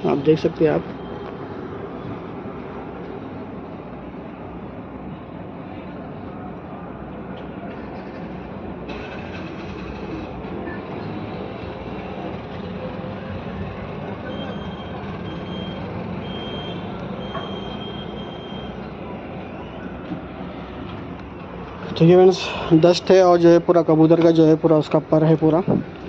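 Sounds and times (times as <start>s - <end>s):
short high-pitched beeps: 14.3s - 18.8s.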